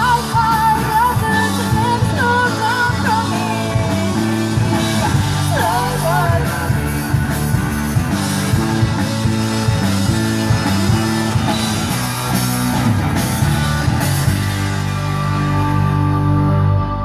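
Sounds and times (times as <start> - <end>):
person singing: 0.0 - 6.9
live rock band playing: 0.0 - 17.0.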